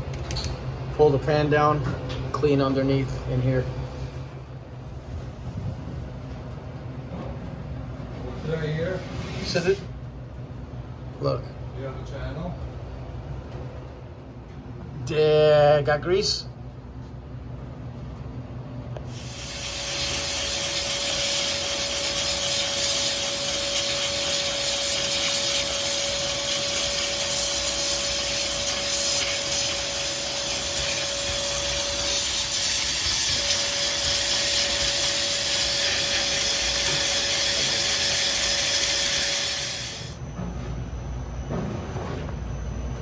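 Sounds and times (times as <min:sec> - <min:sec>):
hiss of spray: 0:19.1 - 0:40.2.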